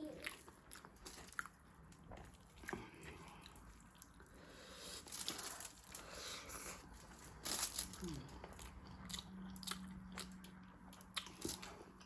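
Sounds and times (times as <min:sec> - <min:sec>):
quiet chewing: 0:00.0 - 0:07.3
soft crunchy rustle: 0:00.2 - 0:08.8.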